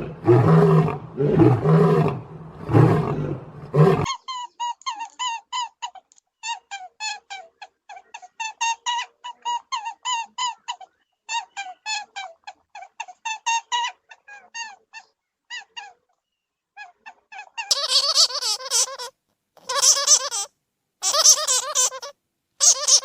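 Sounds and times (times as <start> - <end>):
animal squeaking calls: 16.8 - 23.0.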